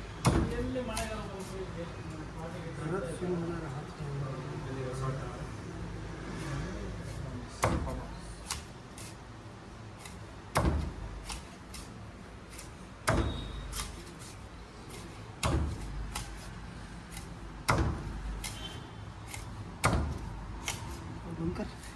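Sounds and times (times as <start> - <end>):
heavy knife chopping fish: 0.2 - 1.5, 6.3 - 9.2, 9.9 - 21.9.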